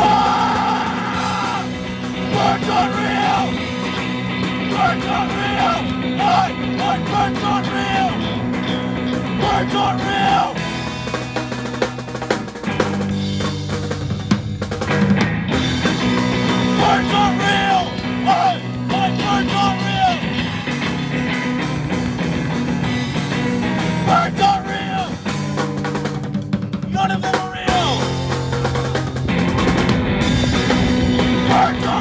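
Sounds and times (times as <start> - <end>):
punk rock band playing: 0.0 - 32.0.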